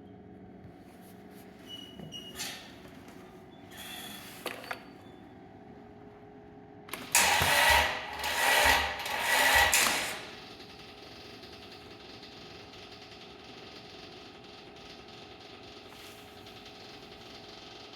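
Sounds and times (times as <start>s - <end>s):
diesel engine cranking without starting: 6.9s - 15.0s.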